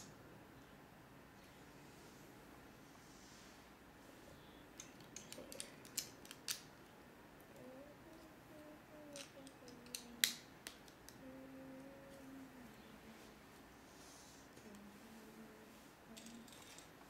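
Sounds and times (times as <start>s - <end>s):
plastic toy bricks clicking: 4.8s - 6.6s, 9.1s - 11.2s.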